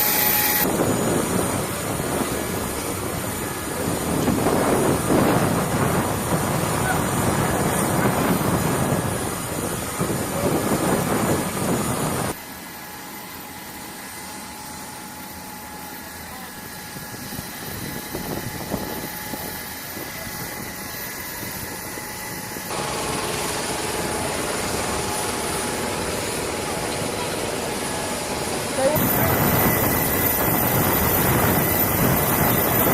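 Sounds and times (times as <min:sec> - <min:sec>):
thin high whine: 0:00.0 - 0:05.5, 0:23.4 - 0:32.9
jet engines running: 0:00.0 - 0:12.4, 0:16.6 - 0:32.9.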